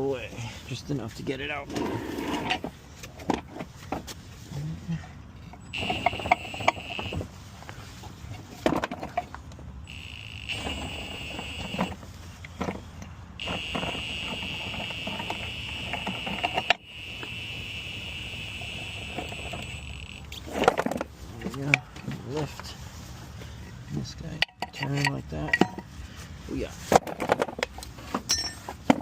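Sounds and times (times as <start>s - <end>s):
power drill motor whine: 5.7s - 7.3s, 9.8s - 12.0s, 13.4s - 20.4s.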